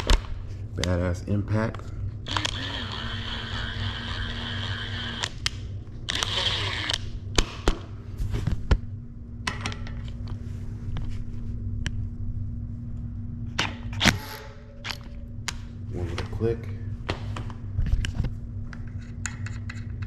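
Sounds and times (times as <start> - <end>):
impact wrench whirring: 2.2 - 5.3, 6.1 - 7.1
tools clicking and knocking: 18.9 - 20.0.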